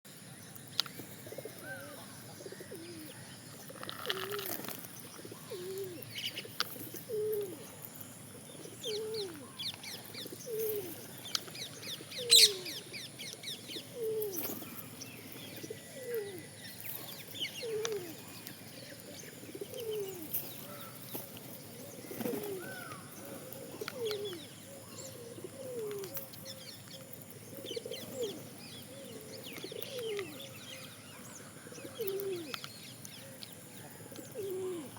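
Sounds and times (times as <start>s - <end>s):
bird low falling call: 8.6s - 21.1s
high bird chirps: 12.2s - 12.9s.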